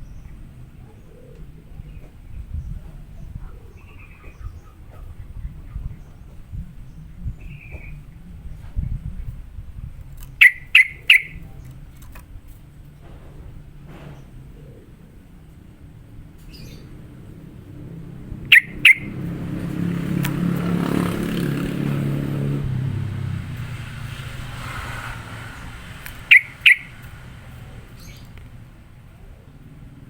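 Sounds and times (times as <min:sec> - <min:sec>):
vehicle passing: 0:01.8 - 0:30.0
bulbul double-note calls: 0:10.4 - 0:11.5, 0:18.5 - 0:19.8, 0:26.1 - 0:27.1.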